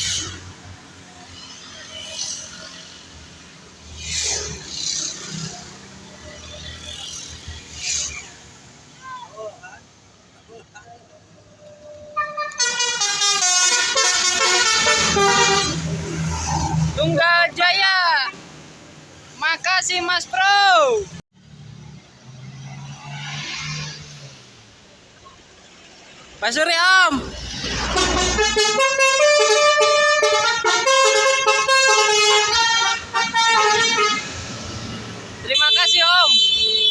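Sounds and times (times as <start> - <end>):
multi-tone bus horn tune: 11.8 - 16.1, 27.8 - 34.4, 35.6 - 36.9.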